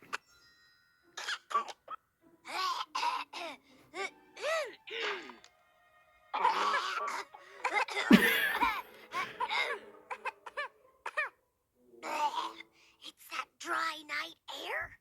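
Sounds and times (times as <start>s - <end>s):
high-pitched laughing: 6.4s - 10.7s
high-pitched voices coughing: 6.4s - 11.4s.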